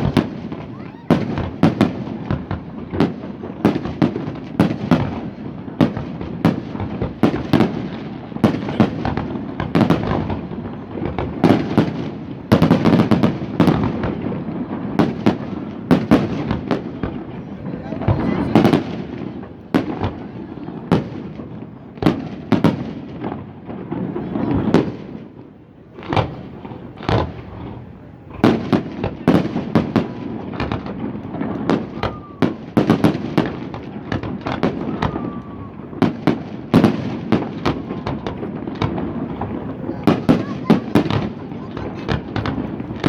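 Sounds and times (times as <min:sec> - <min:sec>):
faint firework whistles: 0:00.0 - 0:05.0, 0:26.2 - 0:43.0
fireworks bursting with sharp bangs: 0:00.0 - 0:43.0.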